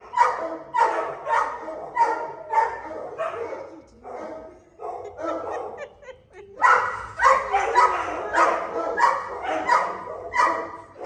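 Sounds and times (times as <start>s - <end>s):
dog barking: 0.0s - 6.0s, 6.6s - 11.0s.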